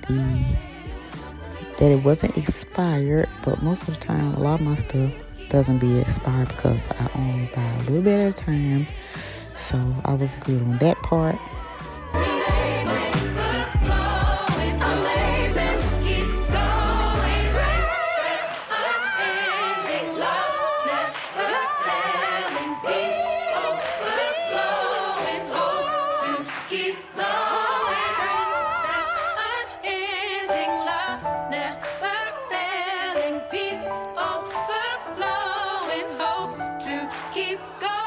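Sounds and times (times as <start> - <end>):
bass line: 0.0 - 2.5, 10.6 - 17.9
voices singing together: 0.0 - 38.0.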